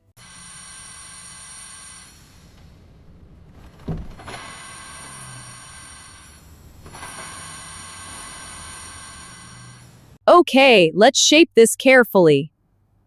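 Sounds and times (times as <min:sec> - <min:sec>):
low thump: 0:03.8 - 0:04.2.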